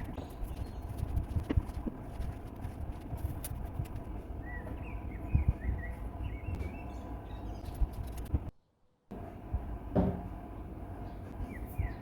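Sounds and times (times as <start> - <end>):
small bird chirping: 0.0 - 1.4, 4.4 - 8.3, 11.0 - 12.0
low outdoor rumble: 0.0 - 12.0.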